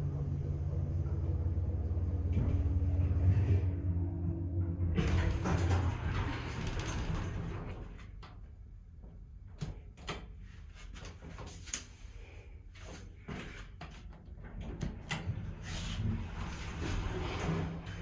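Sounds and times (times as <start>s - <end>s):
elevator hum: 0.0s - 8.8s.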